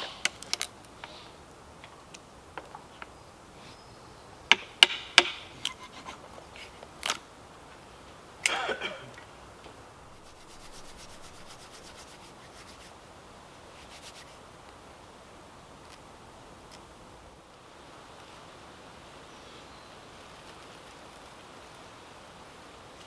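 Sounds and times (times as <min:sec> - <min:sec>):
dry bark cracking and snapping: 0:00.0 - 0:01.0, 0:06.8 - 0:07.3
bark scraping rub: 0:05.4 - 0:06.9, 0:10.0 - 0:13.0, 0:13.7 - 0:14.4
faint rasping of fibres: 0:05.4 - 0:07.2, 0:08.5 - 0:13.1, 0:13.7 - 0:14.5.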